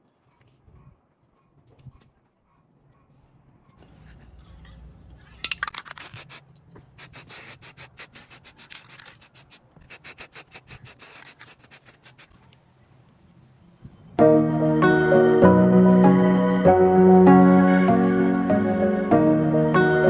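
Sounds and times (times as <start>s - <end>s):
hand rubbing strokes on metal: 5.8s - 6.4s, 7.0s - 12.3s.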